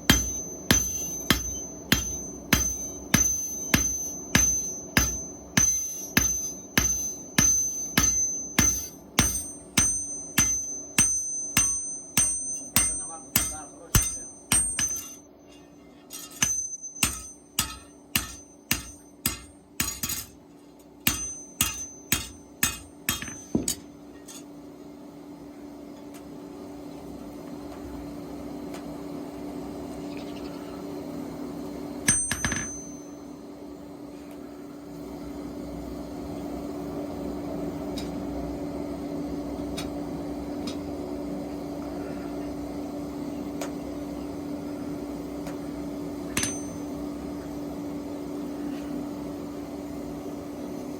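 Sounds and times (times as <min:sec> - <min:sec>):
hammer striking metal on anvil: 0:00.0 - 0:20.4, 0:21.0 - 0:24.5, 0:32.0 - 0:33.2, 0:46.3 - 0:47.0
steady low hum: 0:00.0 - 0:50.9.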